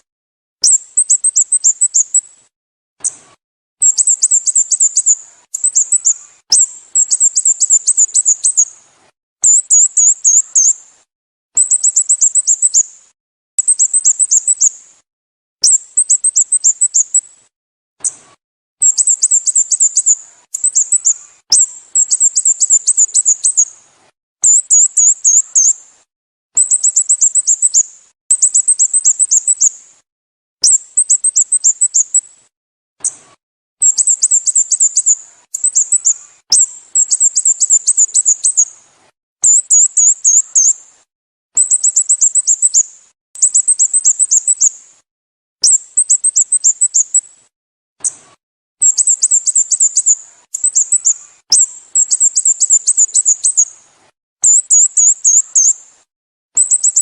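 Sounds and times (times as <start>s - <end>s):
bird chirping: 0.6s - 2.4s, 3.8s - 8.8s, 9.4s - 10.8s, 11.6s - 12.9s, 13.6s - 14.8s, 15.6s - 17.4s, 18.8s - 23.8s, 24.4s - 25.8s, 26.6s - 29.8s, 30.6s - 32.4s, 33.0s - 38.8s, 39.4s - 40.8s, 41.6s - 44.8s, 45.6s - 47.4s, 48.8s - 53.8s, 54.4s - 55.8s, 56.6s - 57.0s.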